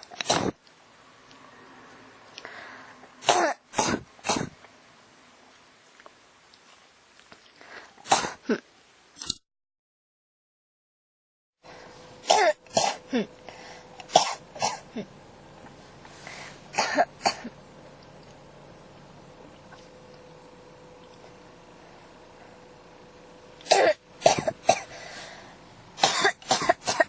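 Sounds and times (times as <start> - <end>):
faint steady hum: 0.0 - 9.1, 11.6 - 27.0
person coughing: 3.2 - 4.6, 8.0 - 8.6, 12.2 - 13.3, 14.1 - 15.1, 16.8 - 17.6, 23.7 - 24.9, 26.0 - 27.0.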